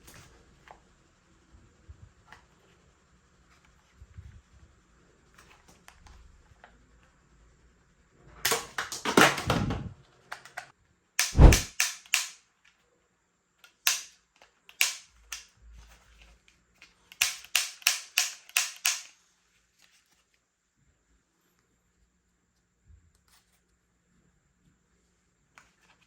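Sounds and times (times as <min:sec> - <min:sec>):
toy gun snapping: 0:08.5 - 0:12.4, 0:13.6 - 0:15.5, 0:17.1 - 0:19.2
toy gun clicking: 0:10.3 - 0:12.5, 0:13.6 - 0:15.5, 0:17.1 - 0:19.2.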